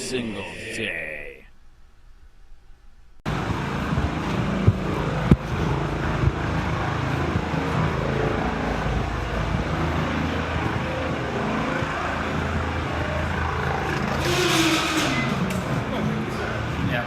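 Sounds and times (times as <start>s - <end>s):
car running noise: 3.3s - 16.9s.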